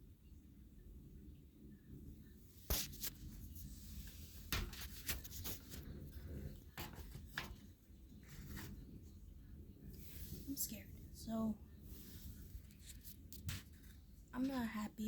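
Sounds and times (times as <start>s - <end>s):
handling clicks and rubs: 2.7s - 8.8s.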